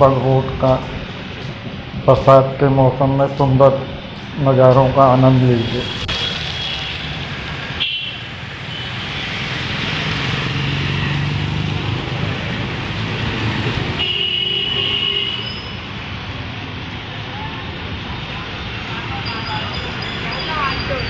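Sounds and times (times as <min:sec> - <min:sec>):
vehicle passing: 0:00.0 - 0:14.1
road traffic: 0:00.0 - 0:21.0.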